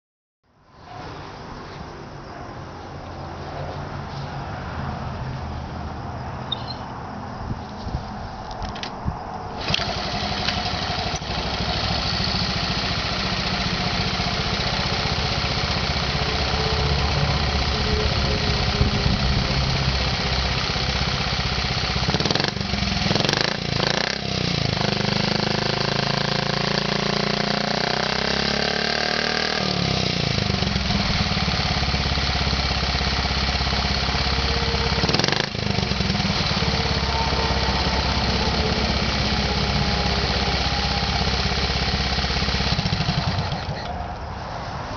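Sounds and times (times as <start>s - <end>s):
small engine idling and revving: 8.7s - 44.9s
minibike engine kick-started: 9.6s - 44.3s.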